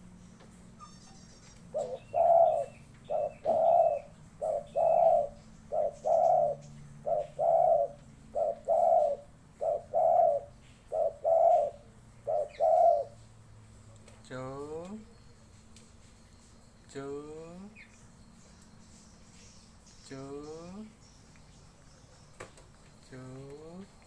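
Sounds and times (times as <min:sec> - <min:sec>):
dove cooing: 0:00.8 - 0:13.3.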